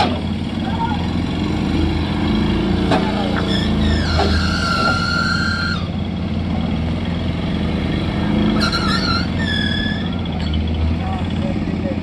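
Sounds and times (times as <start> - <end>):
diesel engine running: 0.0 - 12.0
high whining tones: 3.3 - 6.1, 8.5 - 10.5.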